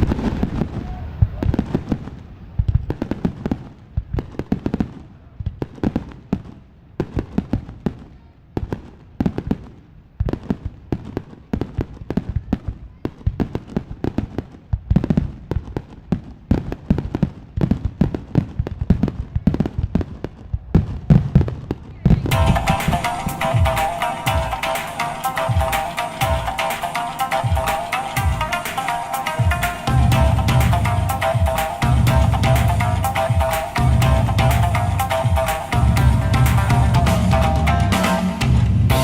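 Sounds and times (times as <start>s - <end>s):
aerial fireworks bursting: 0.0s - 37.2s.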